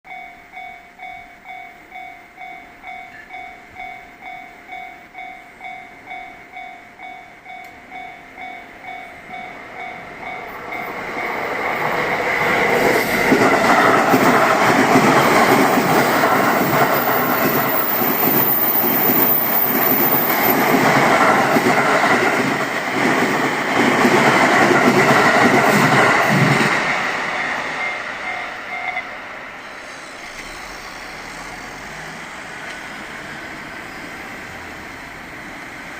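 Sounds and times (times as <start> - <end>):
level crossing warning bell: 0.1 - 12.7, 27.3 - 29.3
electric train passing: 0.1 - 35.9
train wheels clattering on rails: 8.7 - 29.1.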